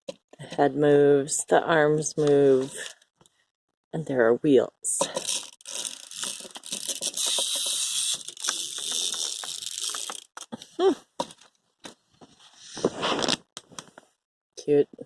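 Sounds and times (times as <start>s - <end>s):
wind-up toy gears buzzing: 5.2s - 10.5s.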